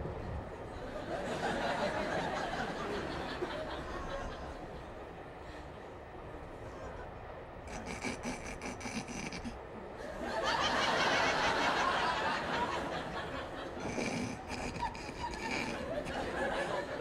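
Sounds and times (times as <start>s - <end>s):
studio audience laughter: 0.8s - 4.7s, 10.0s - 17.0s.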